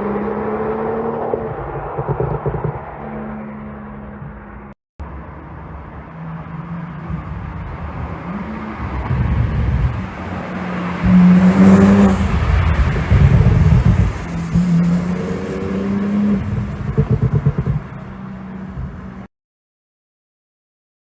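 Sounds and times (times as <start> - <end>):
sports car engine revving: 6.3 - 19.3.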